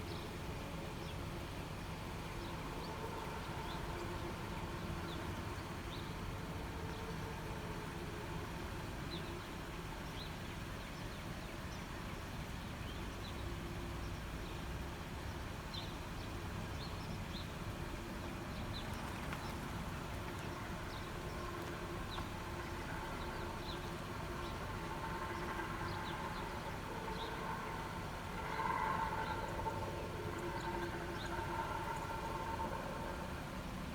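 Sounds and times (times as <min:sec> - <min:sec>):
droning held tones: 0:19.8 - 0:33.9.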